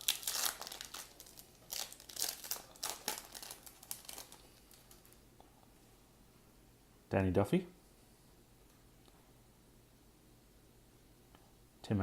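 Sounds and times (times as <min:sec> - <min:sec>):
plastic wrapper crinkling: 0:00.0 - 0:05.2.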